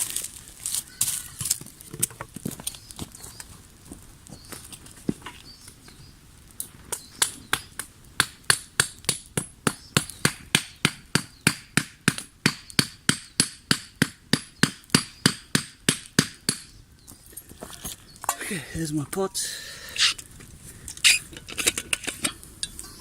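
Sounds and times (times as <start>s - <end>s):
hammering blows on wood: 7.2s - 16.8s.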